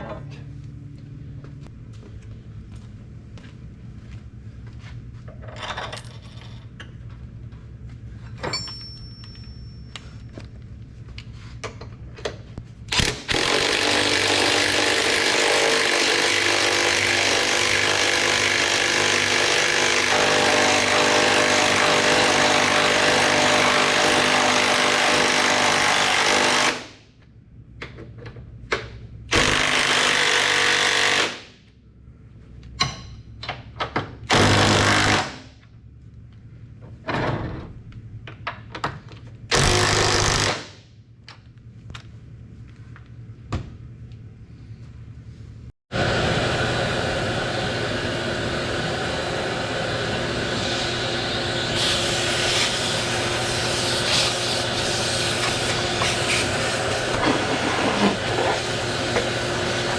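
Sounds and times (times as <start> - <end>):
power tool running: 12.9 - 26.9, 29.3 - 31.4, 34.3 - 35.4, 39.5 - 40.7, 46.0 - 59.9.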